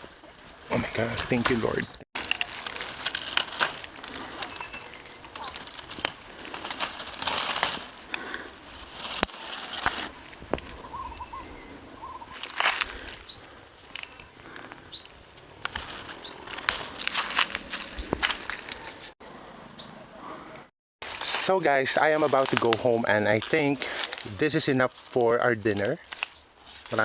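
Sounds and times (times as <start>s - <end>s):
leaves and stems rustling: 0.0s - 19.2s, 21.0s - 27.0s
stems snapping: 2.2s - 11.2s, 12.3s - 19.1s, 22.1s - 24.6s, 25.7s - 27.0s
bird chirping: 3.6s - 6.5s, 9.9s - 15.4s, 16.1s - 16.7s, 19.6s - 20.7s.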